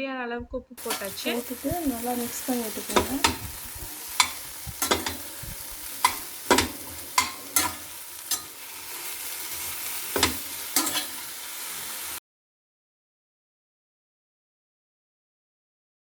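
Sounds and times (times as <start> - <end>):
vegetables sizzling in a pan: 0.8 - 12.2
spoon knocking against pan: 0.9 - 8.6, 10.1 - 11.2.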